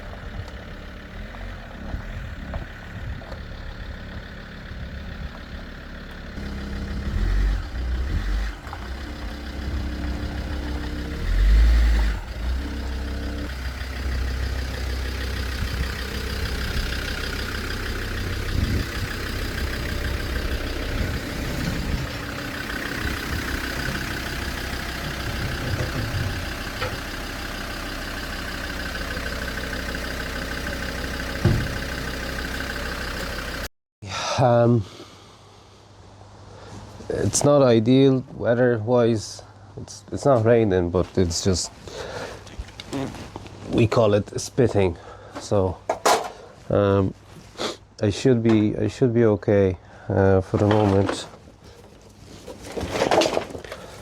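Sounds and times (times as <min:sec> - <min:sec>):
car engine running: 0:00.0 - 0:33.7
heavy low thumps: 0:06.4 - 0:17.3, 0:18.0 - 0:24.1, 0:31.4 - 0:31.9.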